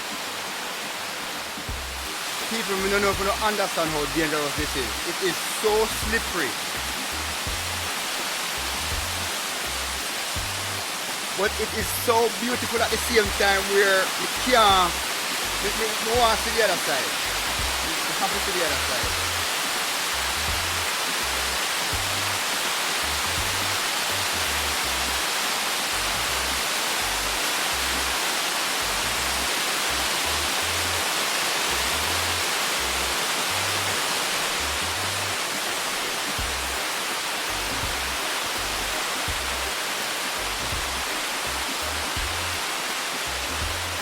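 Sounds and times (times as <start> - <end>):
waterfall pouring over rocks: 0.0 - 44.0.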